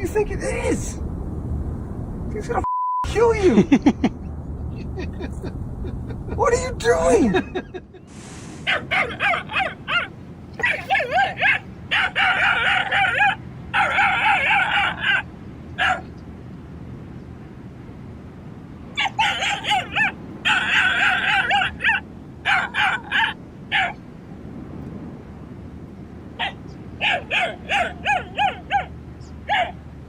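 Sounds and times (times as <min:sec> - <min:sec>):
animal crying high and wavering: 0:08.7 - 0:16.0, 0:19.0 - 0:24.0.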